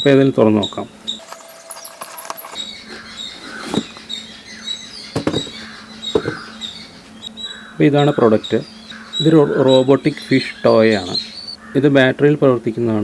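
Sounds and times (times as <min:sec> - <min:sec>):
packaging rustling and crinkling: 0:01.2 - 0:04.1, 0:05.2 - 0:05.6.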